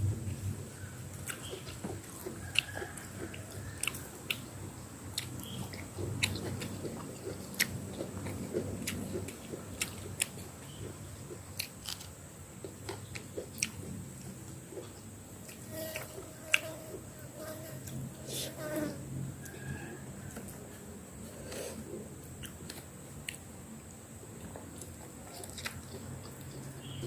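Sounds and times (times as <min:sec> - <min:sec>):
person chewing food: 0:01.1 - 0:17.1, 0:21.3 - 0:27.0.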